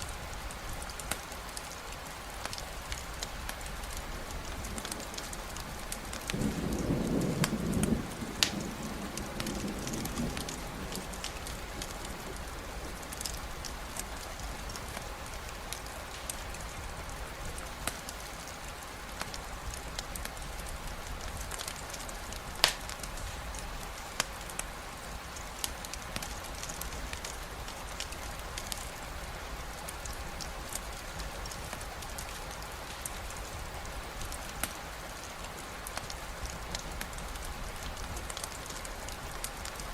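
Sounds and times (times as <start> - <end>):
steady rain hiss: 0.0 - 39.9
thunder rumble: 4.2 - 15.0.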